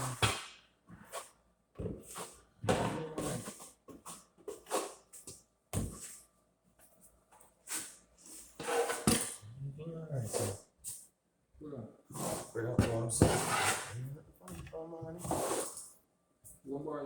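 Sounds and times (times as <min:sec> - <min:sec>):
trowel scraping adhesive on wall: 0:03.2 - 0:05.2, 0:07.7 - 0:09.4, 0:12.1 - 0:15.8.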